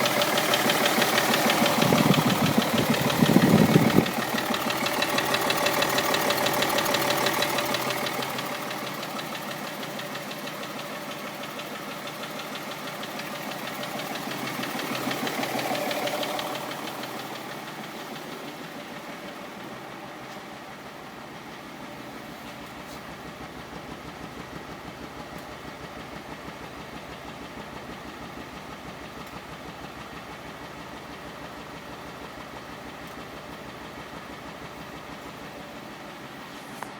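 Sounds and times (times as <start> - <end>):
diesel engine knocking: 0.0 - 36.4.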